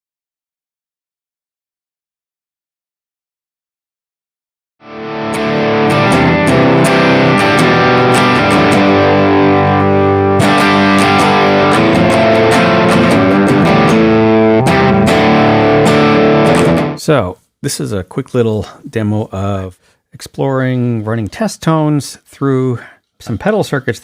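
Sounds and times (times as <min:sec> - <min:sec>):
distorted electric guitar: 0:04.8 - 0:17.0.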